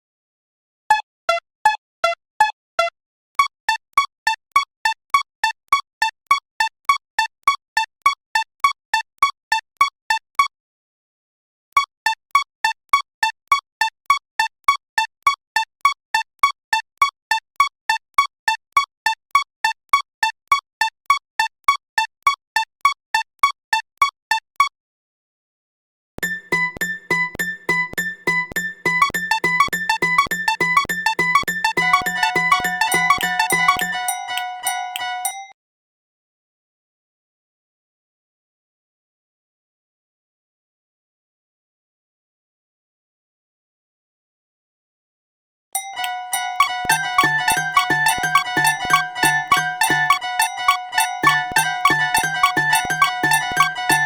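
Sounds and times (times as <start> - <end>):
railroad crossing bell dinging: 26.2 - 35.4, 45.8 - 54.0.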